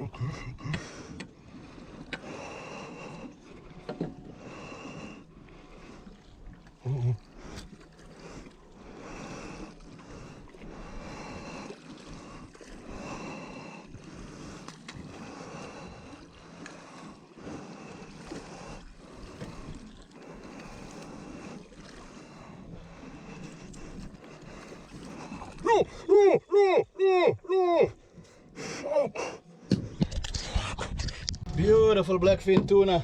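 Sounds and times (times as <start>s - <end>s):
waves against boat hull: 0.6s - 26.1s, 31.6s - 33.0s
wind on microphone: 29.7s - 32.8s.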